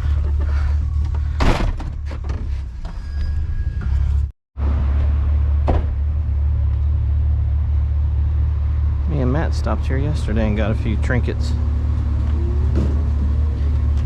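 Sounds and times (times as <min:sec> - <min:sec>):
truck engine idling: 0:03.9 - 0:14.0.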